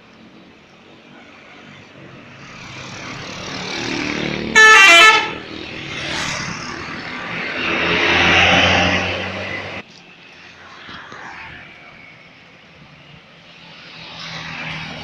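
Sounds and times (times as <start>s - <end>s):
bus engine and tyre noise: 0.0s - 15.0s
musical bus air horn: 4.6s - 5.4s.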